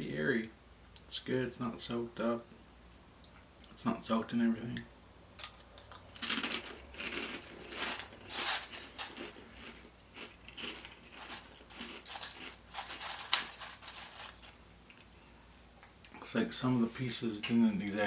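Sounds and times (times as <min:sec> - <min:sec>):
crunching pork rinds: 0:05.4 - 0:15.1.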